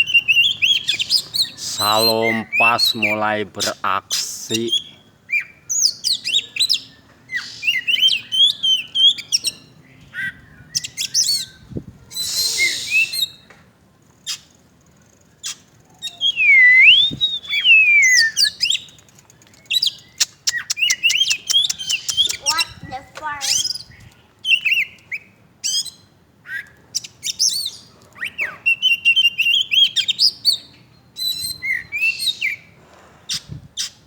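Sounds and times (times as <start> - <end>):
bird singing whistles and chirps: 4.7 - 13.5, 15.4 - 19.0, 19.6 - 22.8, 23.5 - 32.7.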